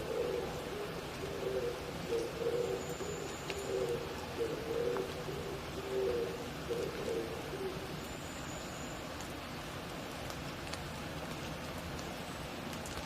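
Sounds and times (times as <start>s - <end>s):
dove cooing: 0.0s - 8.0s
rain hissing: 0.0s - 13.0s
water dripping: 0.0s - 13.0s.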